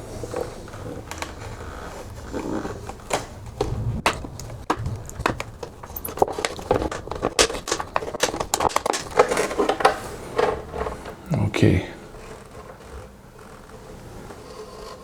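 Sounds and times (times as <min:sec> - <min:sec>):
plastic bottle crackling and clicking: 0:00.7 - 0:11.3.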